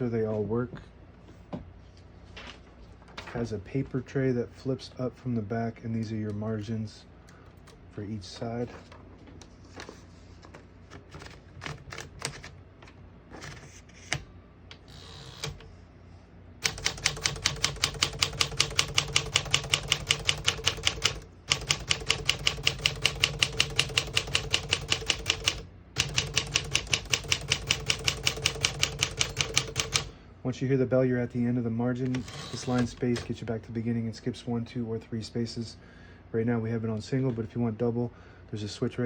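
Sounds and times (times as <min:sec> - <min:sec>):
rapid typewriter typing: 0:11.0 - 0:12.6, 0:16.6 - 0:30.1.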